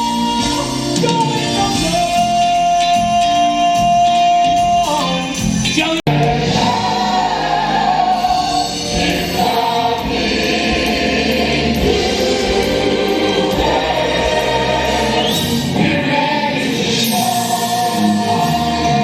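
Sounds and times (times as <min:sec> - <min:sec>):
music track: 0:00.0 - 0:19.0
ensemble singing: 0:06.1 - 0:19.0.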